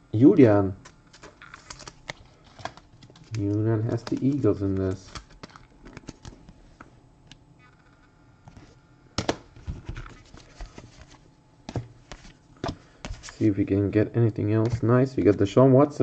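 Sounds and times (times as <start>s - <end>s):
cards clicking and tapping: 0.8s - 6.4s, 9.2s - 11.1s.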